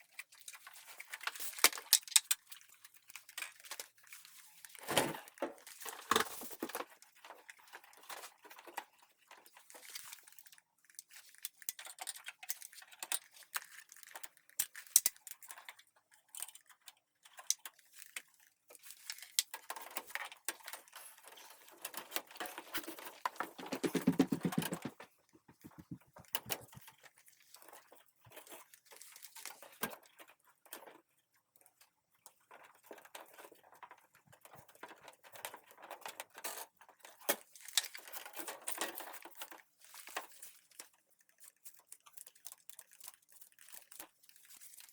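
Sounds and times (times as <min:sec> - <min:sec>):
rustling: 0:22.6 - 0:26.8
handling clicks and knocks: 0:23.4 - 0:26.8.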